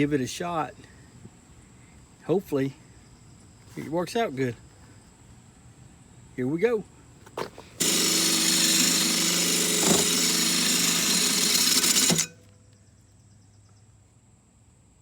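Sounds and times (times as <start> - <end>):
electric drill grinding metal blade: 7.8 - 12.5.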